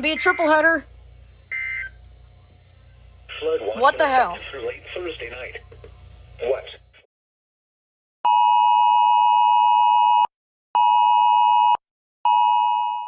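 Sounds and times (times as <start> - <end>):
phone emergency alert beeps: 0.0 - 4.5.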